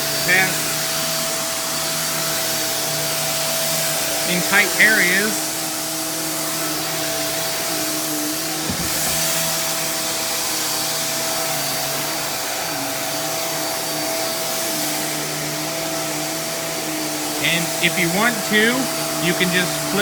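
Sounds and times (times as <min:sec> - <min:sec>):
upright vacuum running: 0:00.0 - 0:20.0
knock: 0:08.7 - 0:09.6.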